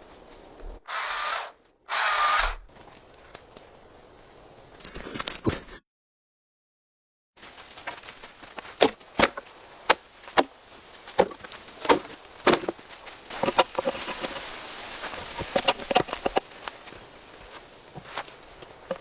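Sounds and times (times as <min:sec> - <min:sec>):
blade chopping: 0:00.8 - 0:02.7.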